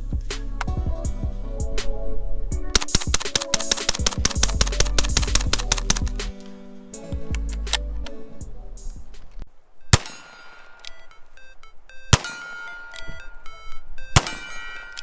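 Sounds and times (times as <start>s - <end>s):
electronic background music: 0.0s - 15.0s
gunshots: 2.8s - 6.5s, 9.9s - 11.4s, 12.1s - 13.0s, 14.1s - 15.0s.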